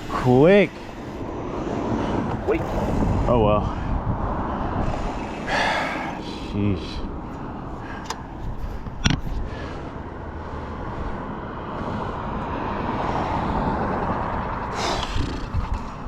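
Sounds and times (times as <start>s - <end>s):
wind on microphone: 1.1s - 7.2s, 10.8s - 16.0s
bicycle tyres rolling on road: 10.9s - 16.0s.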